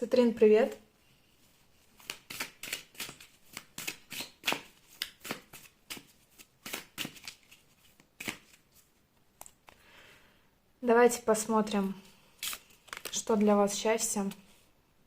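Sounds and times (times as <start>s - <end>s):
cards being shuffled: 1.6s - 9.8s, 12.4s - 13.6s.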